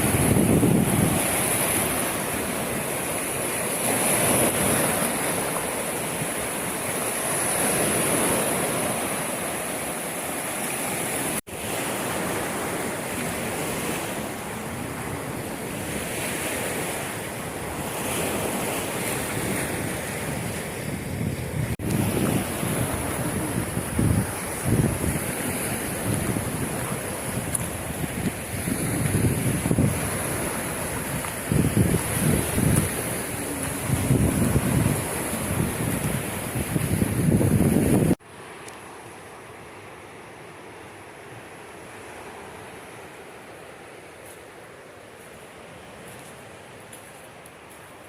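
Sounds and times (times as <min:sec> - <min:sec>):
wind buffeting microphone: 0:00.0 - 0:09.2, 0:14.8 - 0:38.2
sea surf washing ashore: 0:00.0 - 0:48.0.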